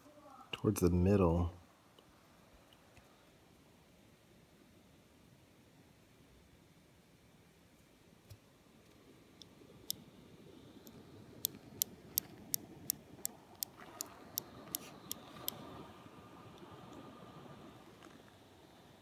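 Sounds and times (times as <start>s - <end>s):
laptop fan hiss: 7.4s - 19.0s.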